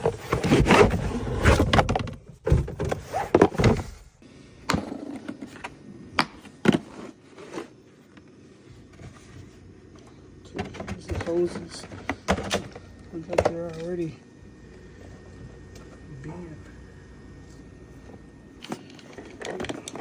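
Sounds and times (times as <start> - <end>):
case and fittings clattering: 0.0 - 4.1, 10.5 - 13.9.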